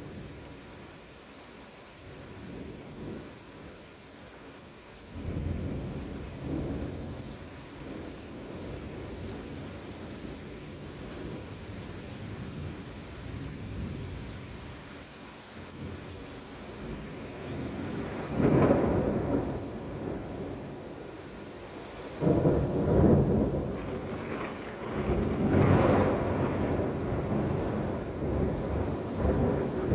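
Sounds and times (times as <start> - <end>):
steady rain: 0.0 - 29.9
thunder rumbling: 17.6 - 21.1, 22.2 - 29.9.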